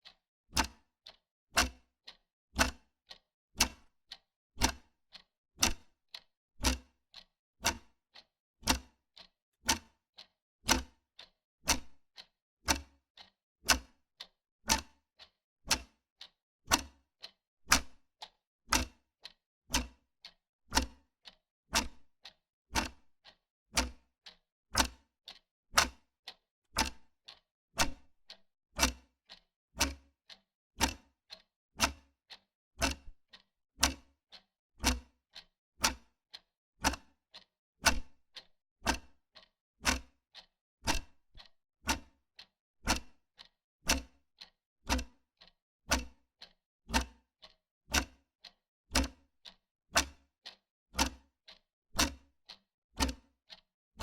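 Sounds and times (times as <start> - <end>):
wall clock ticking: 0.6 - 1.7, 2.6 - 3.8, 4.6 - 5.8, 17.7 - 18.0, 22.8 - 26.0, 26.8 - 44.0, 46.9 - 52.6.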